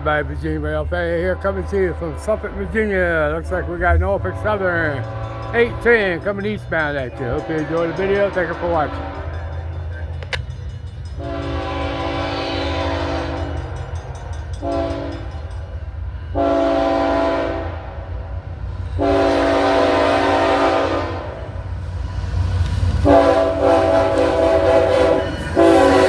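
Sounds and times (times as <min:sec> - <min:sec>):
locomotive air horn chords: 0:00.0 - 0:09.7, 0:11.2 - 0:13.8, 0:14.6 - 0:15.3, 0:16.3 - 0:18.1, 0:19.0 - 0:21.6, 0:23.0 - 0:26.0
low train drone: 0:00.0 - 0:26.0.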